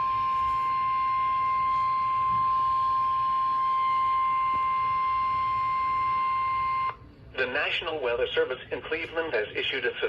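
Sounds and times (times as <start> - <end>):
steady high-pitched alarm tone: 0.0 - 7.1.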